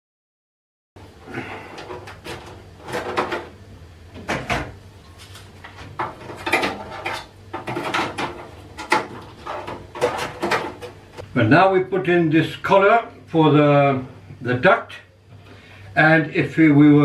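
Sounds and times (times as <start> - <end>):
metal and plastic parts clunking: 1.7 - 3.6, 5.8 - 11.0.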